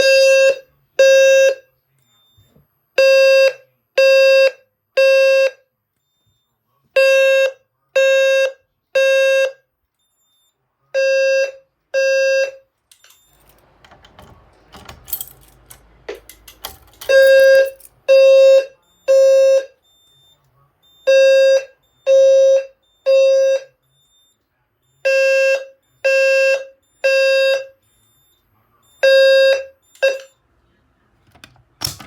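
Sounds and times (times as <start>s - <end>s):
low fire alarm tone pulses: 17.0s - 30.4s.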